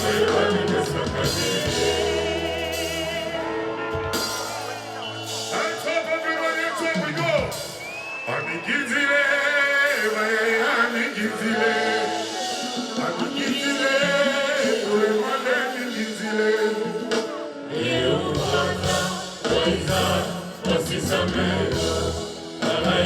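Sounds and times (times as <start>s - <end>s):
man singing: 0.0s - 4.3s, 8.2s - 23.0s
bass and drums: 0.0s - 6.0s, 6.7s - 8.3s, 18.1s - 23.0s
live band music: 0.0s - 23.0s.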